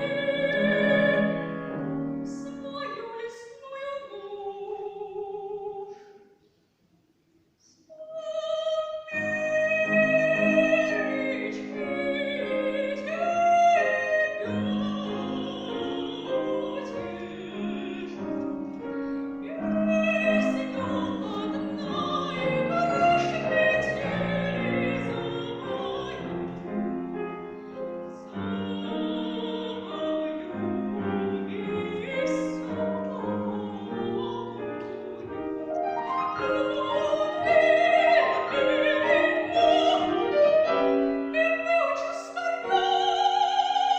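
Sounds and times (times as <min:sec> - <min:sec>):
woman singing with vibrato: 0:00.0 - 0:01.5, 0:02.2 - 0:06.1, 0:07.9 - 0:18.6, 0:19.4 - 0:26.9, 0:28.1 - 0:35.2, 0:36.3 - 0:43.9
piano accompaniment: 0:00.0 - 0:03.0, 0:09.1 - 0:43.9.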